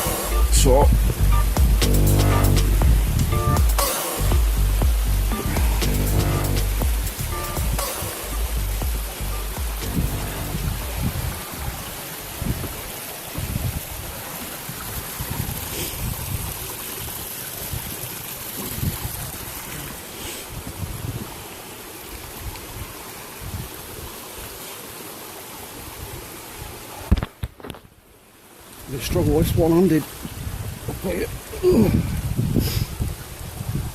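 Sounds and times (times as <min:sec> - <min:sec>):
wind buffeting microphone: 0:00.0 - 0:01.8, 0:09.9 - 0:17.1, 0:18.6 - 0:19.4, 0:20.5 - 0:21.4, 0:29.1 - 0:33.9
waterfall rushing: 0:00.0 - 0:27.1.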